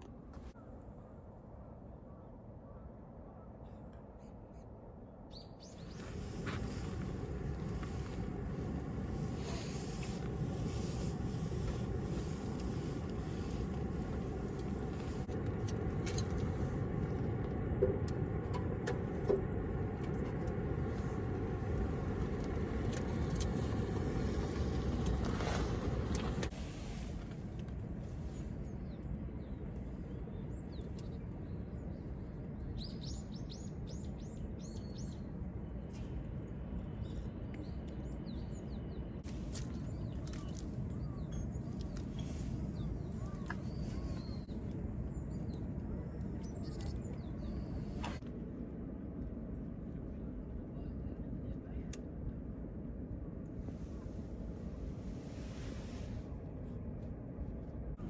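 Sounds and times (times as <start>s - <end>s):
small birds chirping: 36.9s - 48.2s.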